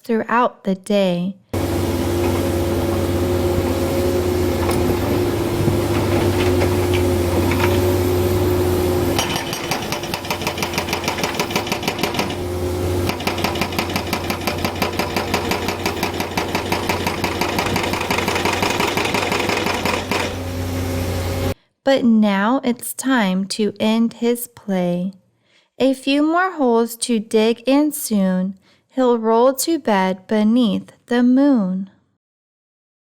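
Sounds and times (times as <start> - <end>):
construction machine engine humming: 1.6 - 21.6
fast even hammering: 9.2 - 20.5.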